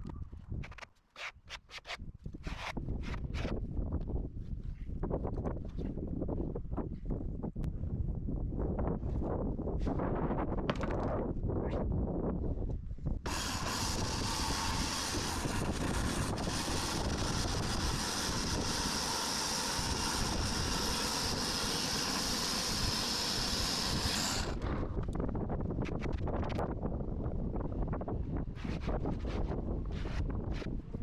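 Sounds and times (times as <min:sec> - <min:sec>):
saw blade cutting log: 0:01.2 - 0:03.5, 0:13.3 - 0:24.9
continuous low rumble: 0:10.1 - 0:31.0.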